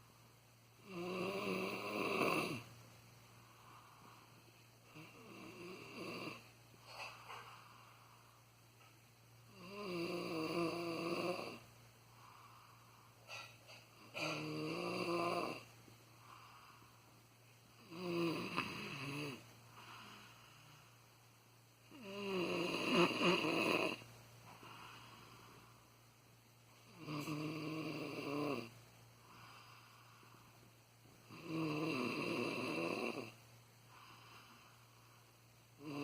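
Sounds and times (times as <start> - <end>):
person snoring: 0.8 - 2.7, 4.9 - 6.5, 9.5 - 11.6, 14.1 - 17.0, 17.7 - 20.8, 21.9 - 24.0, 26.9 - 30.5, 31.2 - 34.9, 35.8 - 36.0.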